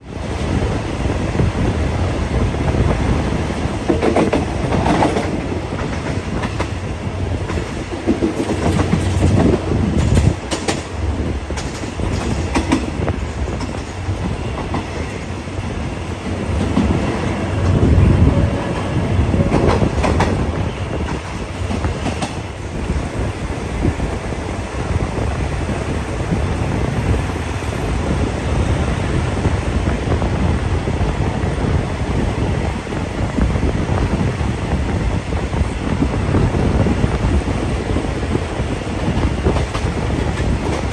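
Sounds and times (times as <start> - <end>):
train rumbling on track: 0.0 - 40.9
wheels clacking over rail joints: 3.8 - 6.8.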